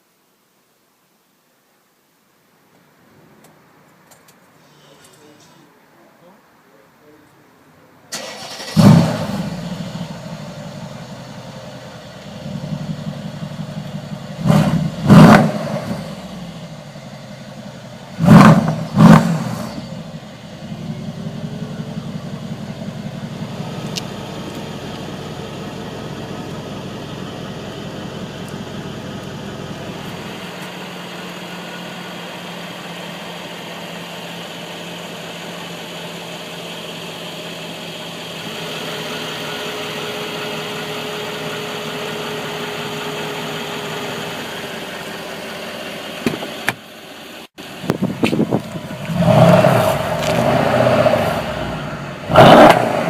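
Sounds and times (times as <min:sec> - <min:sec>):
car engine idling and revving: 0:08.1 - 0:53.0.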